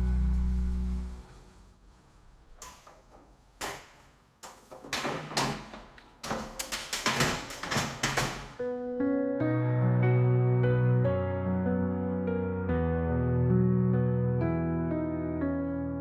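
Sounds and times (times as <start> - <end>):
hard objects knocking and clattering: 2.6 - 8.6.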